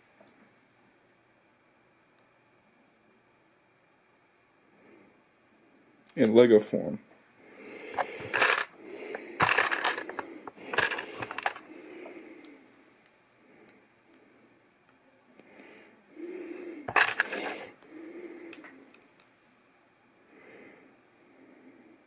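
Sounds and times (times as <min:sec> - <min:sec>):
rustling: 0:07.9 - 0:11.7
plastic bricks clicking and clattering: 0:08.0 - 0:11.6, 0:16.9 - 0:17.7.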